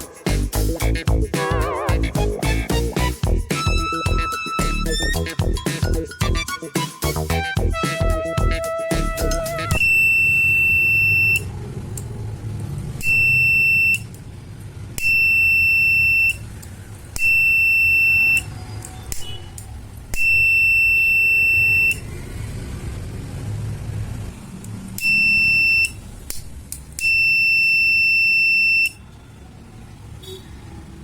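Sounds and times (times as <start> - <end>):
shrill buzzer tone: 9.7 - 11.5, 13.0 - 14.1, 17.2 - 18.5, 25.0 - 26.0, 27.0 - 29.0.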